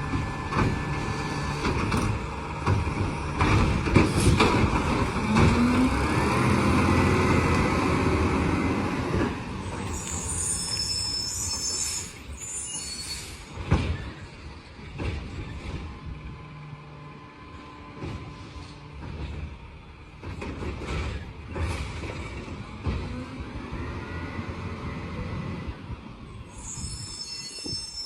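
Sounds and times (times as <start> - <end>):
garbage truck machinery running: 0.0 - 10.3, 13.6 - 26.3
high squeal: 9.6 - 14.4, 26.4 - 28.0.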